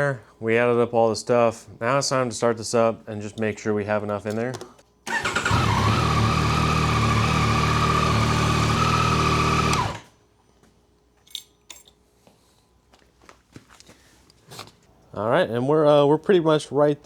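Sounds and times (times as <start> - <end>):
motorcycle engine idling: 5.1 - 10.0.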